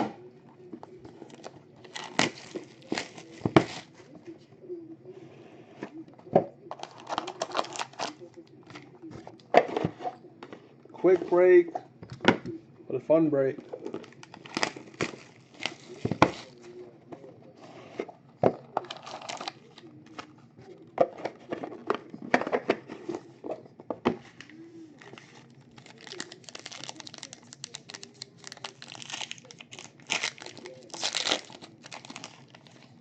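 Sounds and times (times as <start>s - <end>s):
plastic wrapping crinkling: 6.8s - 8.3s, 13.8s - 16.6s, 18.8s - 20.3s, 25.0s - 33.0s.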